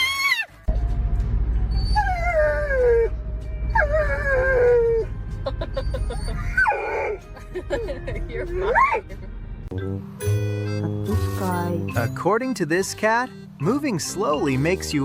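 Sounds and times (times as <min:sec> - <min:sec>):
low rumble: 0:00.7 - 0:06.7
dog whining and howling: 0:01.7 - 0:05.1, 0:05.7 - 0:07.2.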